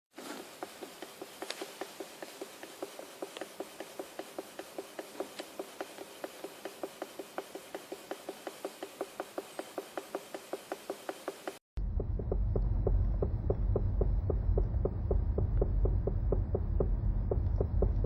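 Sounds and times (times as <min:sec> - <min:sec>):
accelerator pedal clicking: 0:11.8 - 0:18.0.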